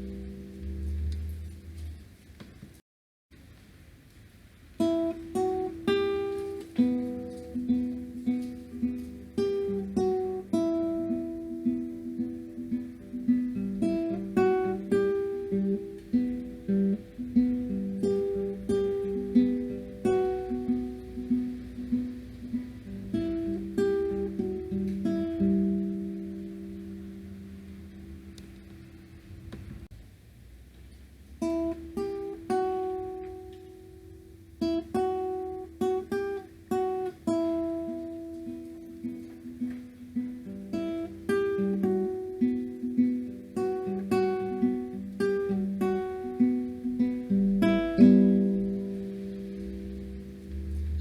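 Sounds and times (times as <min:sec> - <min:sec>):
acoustic guitar music: 0:00.0 - 0:02.8, 0:04.7 - 0:29.9, 0:30.7 - 0:51.0.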